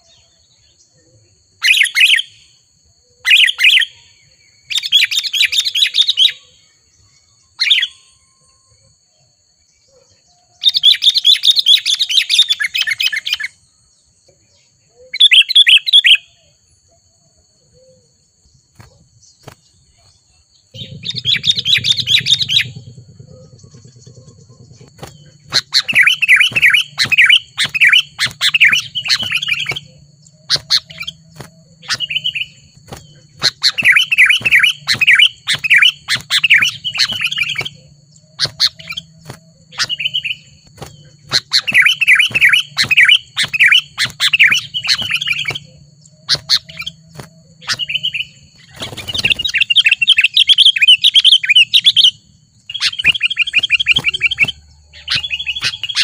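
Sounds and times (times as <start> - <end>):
bulbul chattering song: 1.6 - 2.6, 18.8 - 56.0
low hum: 20.7 - 48.8.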